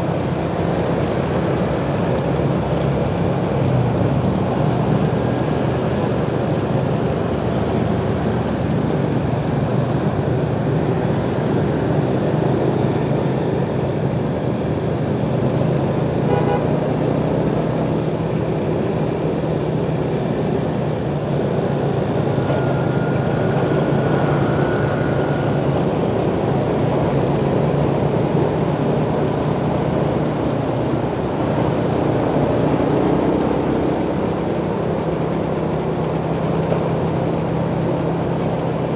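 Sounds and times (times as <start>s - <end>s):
motorcycle engine drone: 0.0s - 38.9s
wind and road noise: 0.0s - 38.9s
high-pitched tone: 22.0s - 26.6s.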